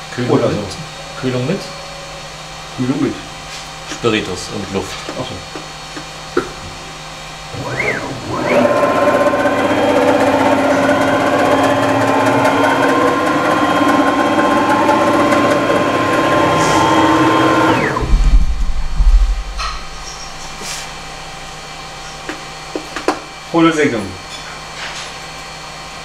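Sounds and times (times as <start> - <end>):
milling spindle whine: 0.0 - 5.8, 6.7 - 22.2
loud low rumble: 9.2 - 21.7.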